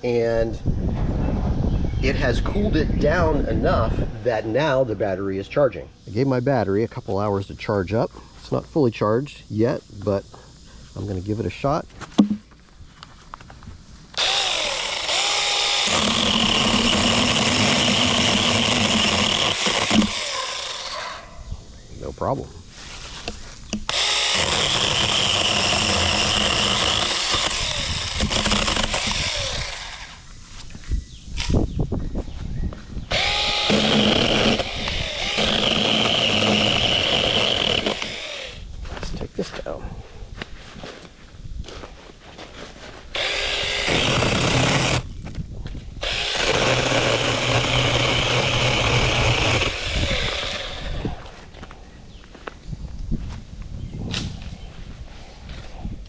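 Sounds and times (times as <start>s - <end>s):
cordless chainsaw high whine: 14.1s - 21.3s, 23.8s - 30.3s, 33.1s - 38.7s, 43.1s - 45.2s, 46.0s - 51.6s.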